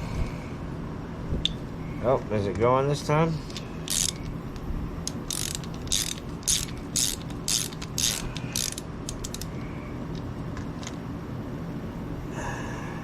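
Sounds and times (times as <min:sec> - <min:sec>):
ratchet wrench rasping: 0:03.4 - 0:04.4, 0:05.1 - 0:09.6
sharp ratchet clicks: 0:03.5 - 0:09.6.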